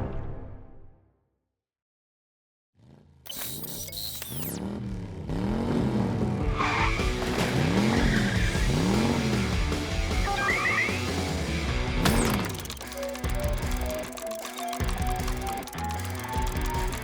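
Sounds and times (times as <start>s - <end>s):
dense noisy background: 6.9s - 17.0s.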